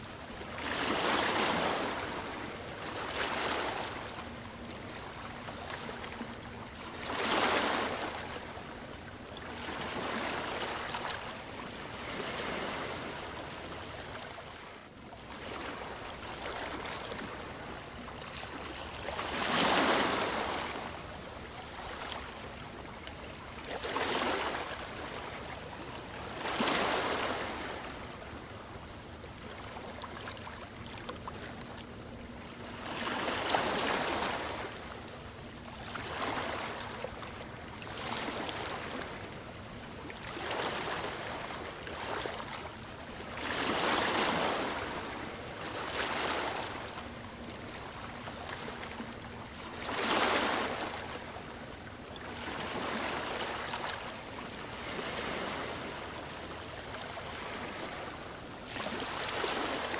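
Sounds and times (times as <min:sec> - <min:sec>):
ocean waves washing ashore: 0:09.6 - 0:14.6, 0:32.2 - 0:59.9.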